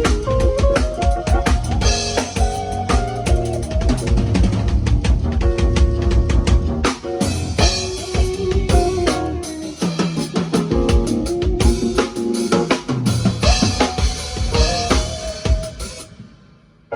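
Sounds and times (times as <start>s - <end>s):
bass line: 0.0s - 9.7s, 13.2s - 15.5s
held keyboard notes: 0.0s - 16.0s
drum kit beat: 0.0s - 16.5s.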